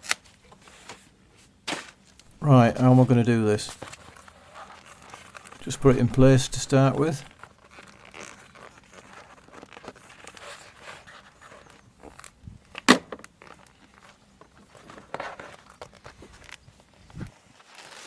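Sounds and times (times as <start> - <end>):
foam sheet rustling: 13.3 - 18.0.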